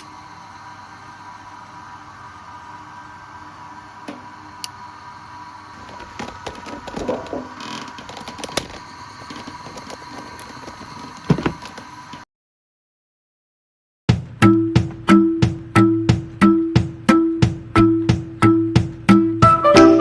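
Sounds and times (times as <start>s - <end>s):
clicks knocks and scraping: 5.8s - 11.9s.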